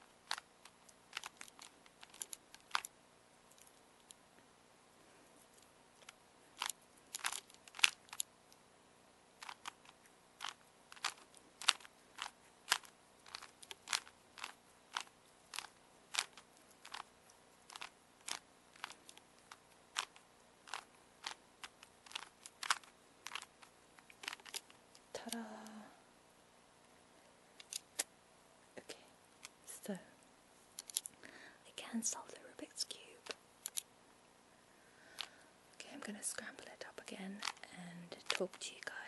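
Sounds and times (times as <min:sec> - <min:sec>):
puzzle cube plastic clicks: 0:00.2 - 0:02.9, 0:06.0 - 0:08.3, 0:09.4 - 0:25.4, 0:27.6 - 0:28.1, 0:30.8 - 0:31.1, 0:32.9 - 0:33.9, 0:37.4 - 0:39.0.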